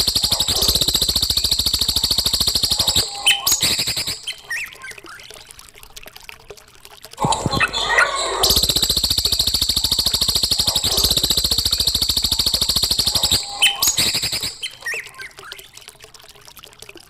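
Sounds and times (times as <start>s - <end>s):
songbird rattling trill: 0.0s - 4.9s, 7.2s - 15.4s
bird short chirps: 1.8s - 5.0s, 7.2s - 15.3s.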